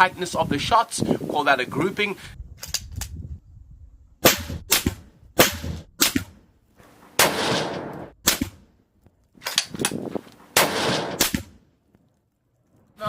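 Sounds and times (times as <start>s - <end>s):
rifle shots with echo: 7.1s - 8.6s, 10.5s - 11.6s.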